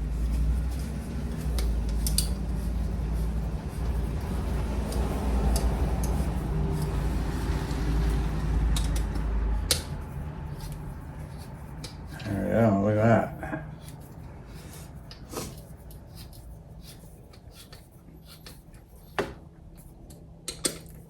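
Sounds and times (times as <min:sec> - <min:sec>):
steady low hum: 0:00.0 - 0:20.5
tool clicks and creaks: 0:01.5 - 0:02.4, 0:08.6 - 0:10.0.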